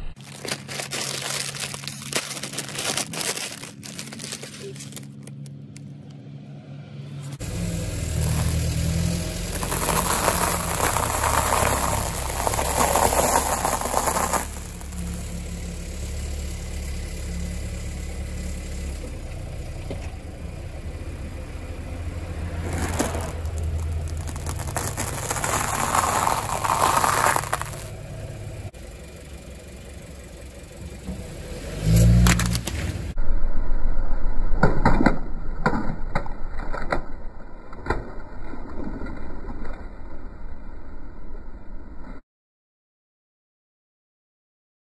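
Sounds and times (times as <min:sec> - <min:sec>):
car engine at low speed: 0:00.0 - 0:37.8
tyres crunching over objects: 0:00.2 - 0:05.4, 0:07.4 - 0:15.4, 0:22.5 - 0:28.0
sharp crack: 0:07.5 - 0:15.4, 0:22.6 - 0:28.0, 0:34.4 - 0:39.2.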